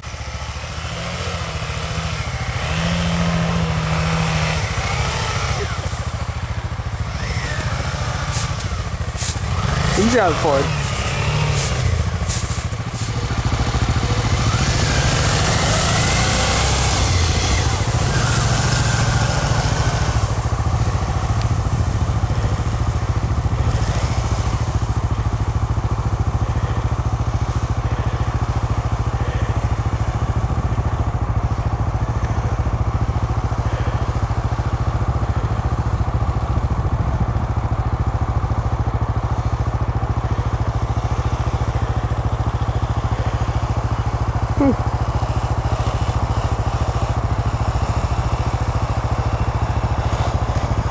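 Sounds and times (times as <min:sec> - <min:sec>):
motorcycle engine running: 0:00.0 - 0:50.9
rush of hiss: 0:03.8 - 0:28.9.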